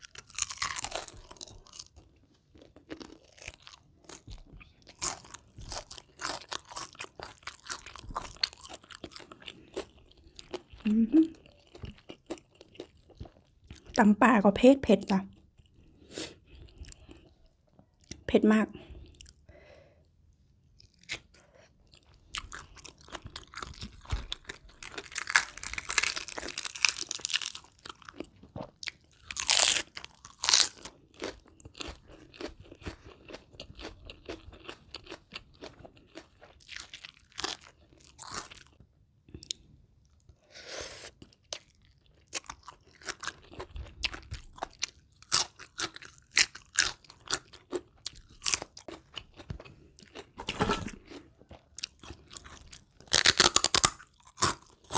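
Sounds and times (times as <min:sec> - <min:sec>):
fried chicken crunching: 0:00.0 - 0:10.8, 0:22.3 - 0:38.8, 0:41.0 - 0:54.9.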